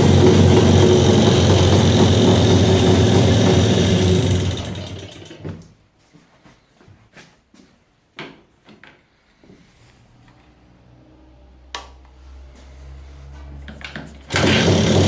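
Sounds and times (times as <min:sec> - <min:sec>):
two-stroke engine idling with knock: 0:00.0 - 0:05.6, 0:14.3 - 0:15.0.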